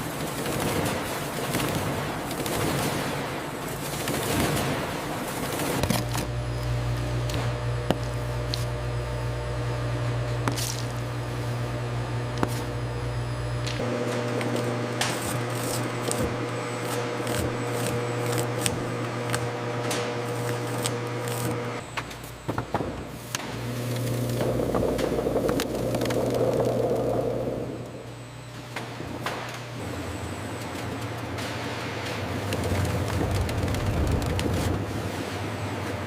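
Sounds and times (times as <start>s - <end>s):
machine hum: 0.0s - 36.0s
deep rumble: 23.6s - 28.2s.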